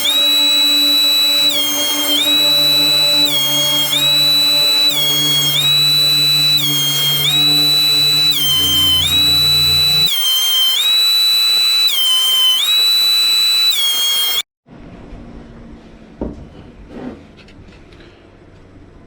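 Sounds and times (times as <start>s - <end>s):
background music high melody: 0.0s - 10.3s
low hum: 0.0s - 14.4s.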